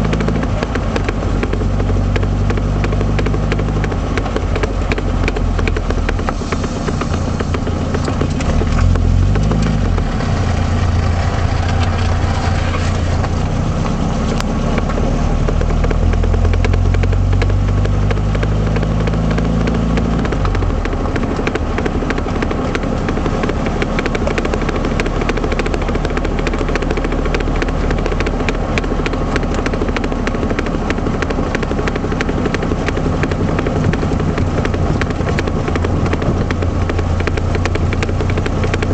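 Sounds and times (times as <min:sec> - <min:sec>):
car engine running: 0:00.0 - 0:38.9
rapid rear knocking: 0:00.0 - 0:38.9.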